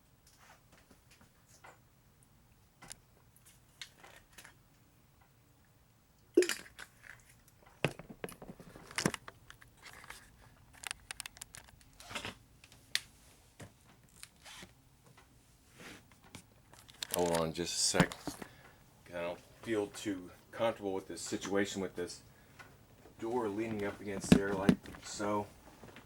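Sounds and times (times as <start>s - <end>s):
panels knocking and scraping: 23.6s - 25.3s.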